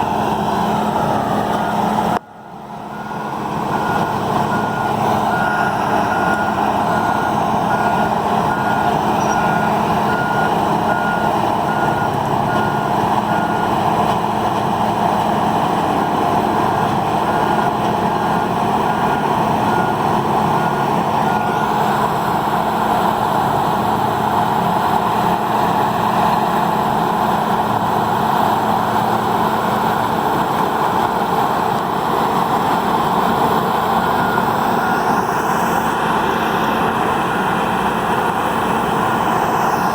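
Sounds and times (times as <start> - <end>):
reversing alarm beeps: 0.9 - 13.8, 16.0 - 22.7, 33.9 - 35.9.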